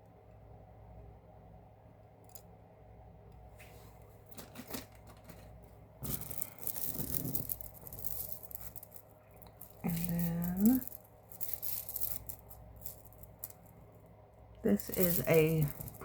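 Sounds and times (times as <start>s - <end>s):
plastic bag crinkling: 4.3s - 13.7s, 14.7s - 16.0s.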